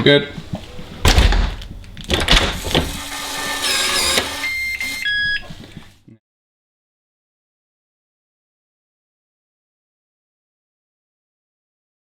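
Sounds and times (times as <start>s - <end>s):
electronic beeps: 4.4s - 5.5s.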